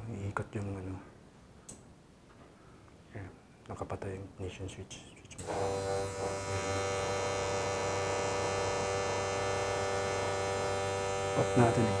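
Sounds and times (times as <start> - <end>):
electric motor buzzing hum: 5.4 - 12.0.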